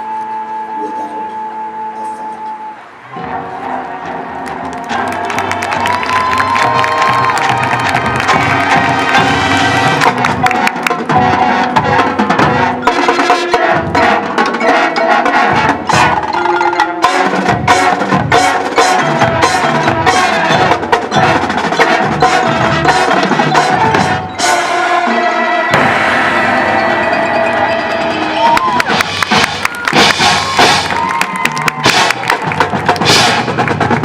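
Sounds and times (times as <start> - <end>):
marching band playing: 3.1 - 34.0
drum and block strikes: 25.7 - 34.0.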